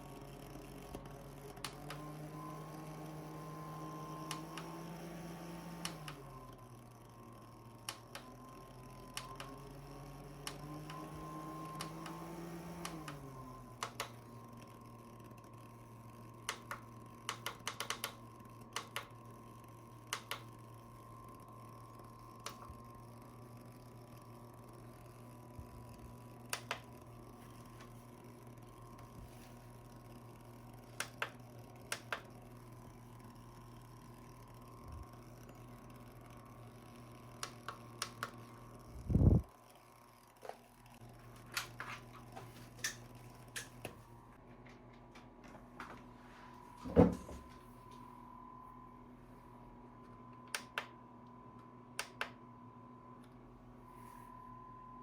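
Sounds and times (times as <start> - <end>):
small fan motor humming: 0.0 - 55.0
sharp clicks: 16.5 - 18.2, 18.8 - 19.1, 20.1 - 20.4, 26.5 - 26.9, 50.5 - 50.9, 52.0 - 52.4.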